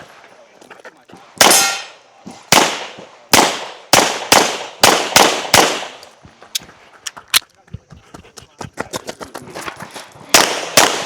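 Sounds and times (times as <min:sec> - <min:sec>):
pistol gunshots: 0:01.4 - 0:06.0, 0:10.3 - 0:11.0.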